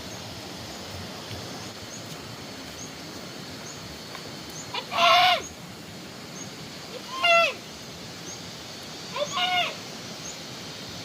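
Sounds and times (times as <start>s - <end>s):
outdoor background noise: 0.0s - 11.0s.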